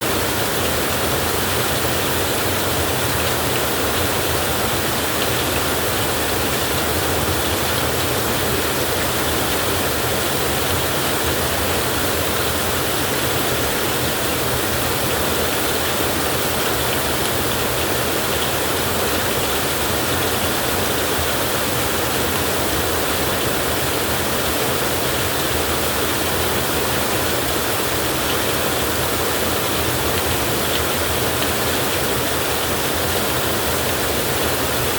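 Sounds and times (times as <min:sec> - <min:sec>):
heavy rain falling: 0:00.0 - 0:34.9.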